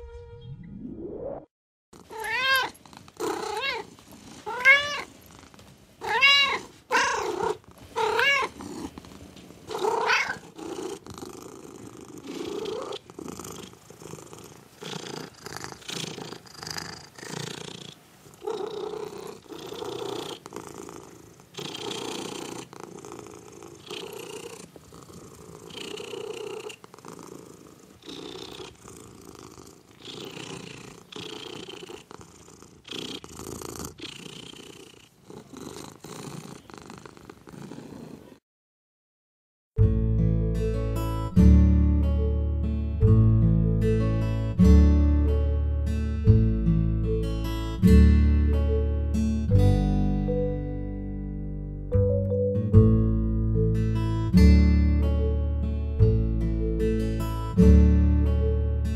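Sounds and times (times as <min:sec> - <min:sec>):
cat meowing: 0:02.0 - 0:05.1, 0:06.0 - 0:08.6, 0:09.7 - 0:10.4
cat purring: 0:02.0 - 0:38.4.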